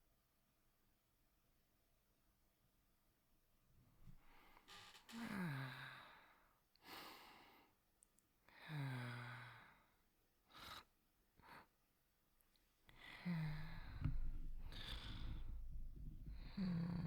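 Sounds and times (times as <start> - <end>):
person sleep breathing: 13.0 - 17.0.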